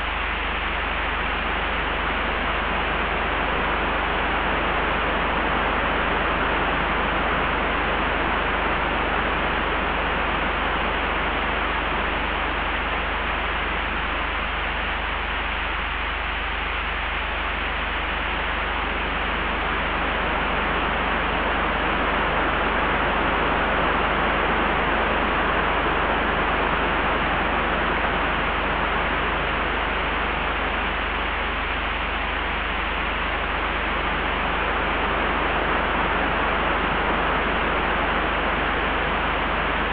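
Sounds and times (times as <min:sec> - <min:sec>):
steady wind: 0:00.0 - 0:39.9.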